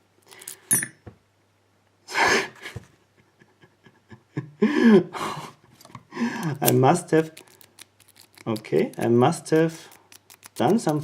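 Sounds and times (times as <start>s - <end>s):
person breathing out hard: 4.6s - 6.6s.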